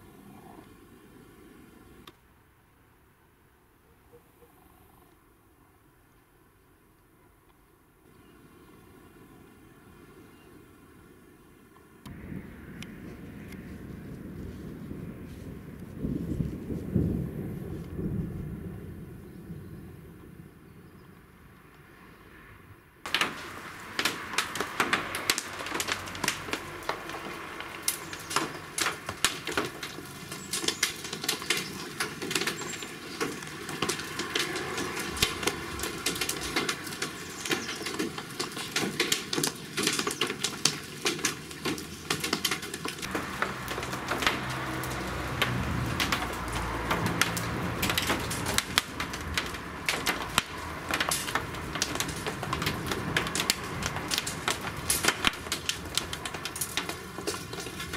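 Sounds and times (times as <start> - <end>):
rain and hail hitting hard surfaces: 12.1 - 19.0, 23.0 - 57.9
low rumble: 12.1 - 20.7.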